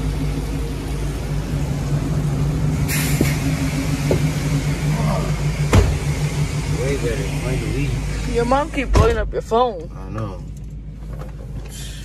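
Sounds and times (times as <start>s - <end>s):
truck engine idling: 0.0s - 12.0s
short hiss: 2.9s - 3.4s.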